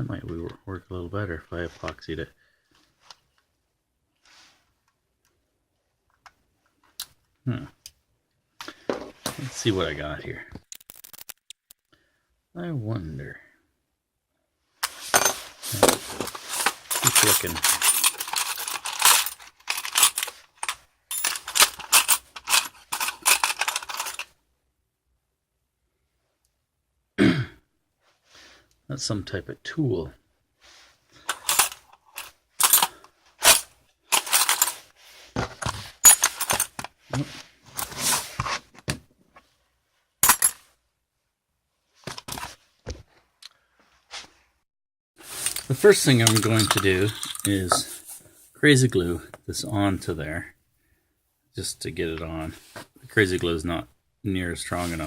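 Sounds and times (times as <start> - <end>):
metal parts clinking: 10.8 - 11.4, 14.8 - 24.3, 31.2 - 34.8, 35.6 - 37.0, 40.2 - 40.7, 45.2 - 48.2
small hard objects clattering: 14.8 - 24.3, 31.3 - 34.8, 45.2 - 48.1.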